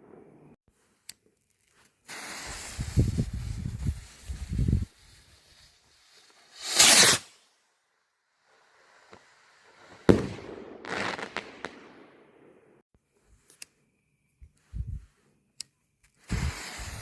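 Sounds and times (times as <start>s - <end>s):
firework launching whoosh: 2.1s - 7.4s, 9.9s - 11.9s, 16.3s - 17.0s
firework bang: 10.0s - 11.9s.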